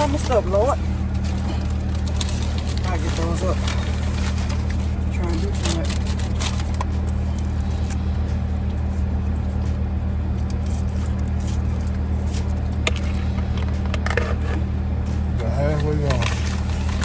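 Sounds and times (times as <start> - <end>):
food handling clicks and rustles: 0.0 - 17.0
idling car hum: 0.0 - 17.0.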